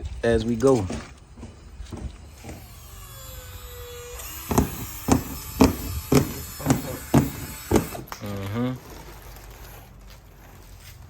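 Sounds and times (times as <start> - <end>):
sharp knocks: 4.5 - 8.1.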